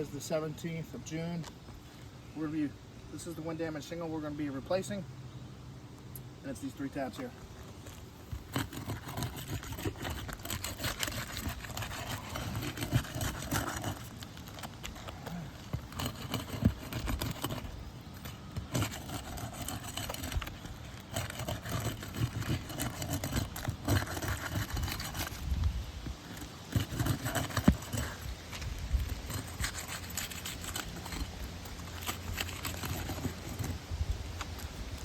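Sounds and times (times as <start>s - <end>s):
footsteps on shingle roof: 7.2s - 35.0s.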